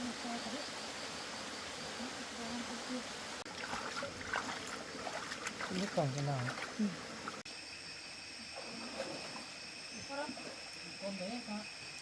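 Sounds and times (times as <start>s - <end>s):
running water rushing: 0.0s - 7.4s
splashes in shallow water: 3.4s - 7.4s.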